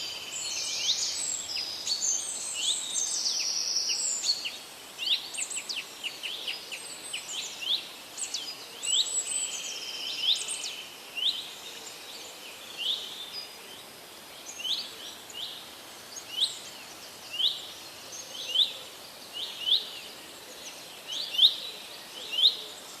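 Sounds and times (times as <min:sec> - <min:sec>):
stream hissing: 0:00.0 - 0:12.1.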